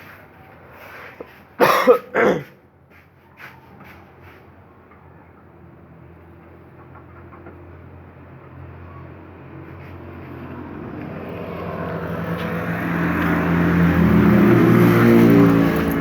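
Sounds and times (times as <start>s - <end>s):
vehicle engine running: 6.0s - 16.0s.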